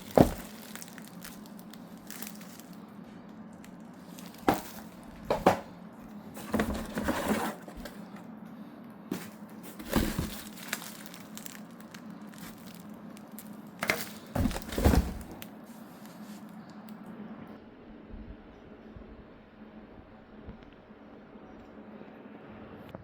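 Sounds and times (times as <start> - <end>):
packaging crinkling and rustling: 0.0 - 5.7, 6.3 - 8.2, 9.1 - 16.6.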